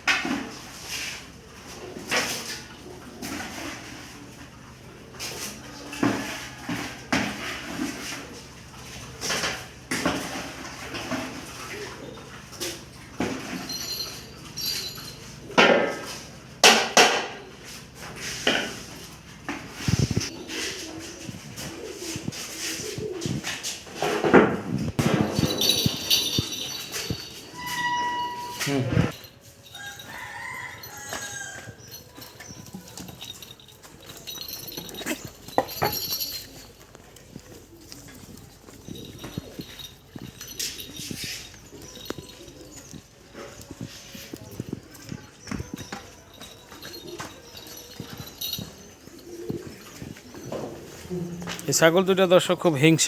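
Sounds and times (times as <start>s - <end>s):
sharp knocks and rustles: 5.2s - 51.6s
sharp knocks and clatters: 15.6s - 17.4s, 24.0s - 27.5s.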